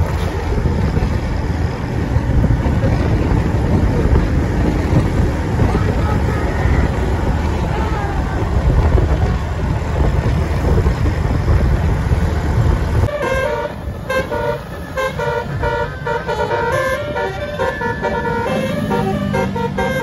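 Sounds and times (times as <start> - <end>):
low vehicle rumble: 0.0 - 20.0
multi-tone musical air horn: 13.1 - 20.0.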